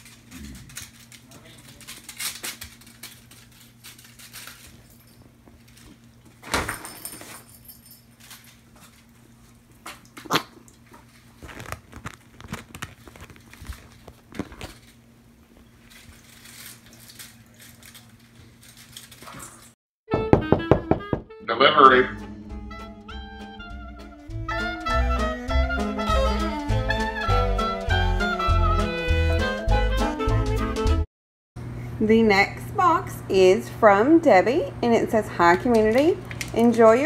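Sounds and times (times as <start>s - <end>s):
kittens rustling and scuffling: 10.8s - 19.8s
steady low hum: 21.5s - 24.5s.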